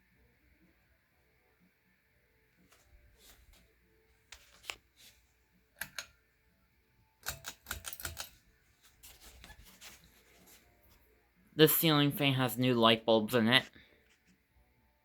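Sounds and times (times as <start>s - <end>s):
sharp clicks and light rattles: 7.2s - 8.4s.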